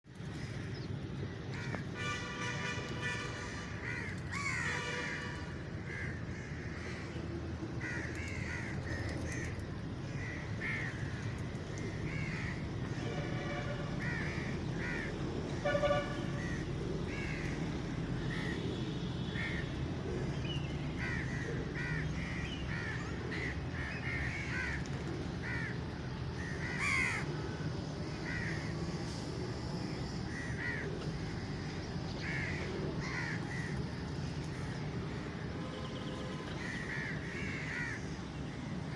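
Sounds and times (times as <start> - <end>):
crows cawing: 1.5 - 7.2, 7.8 - 13.1, 14.0 - 19.7, 21.0 - 25.8, 26.4 - 28.8, 30.3 - 33.9, 36.5 - 38.6.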